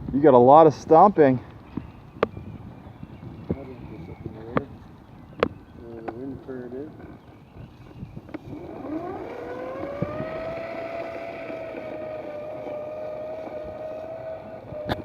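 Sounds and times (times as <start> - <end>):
toy motor humming: 8.4 - 15.0.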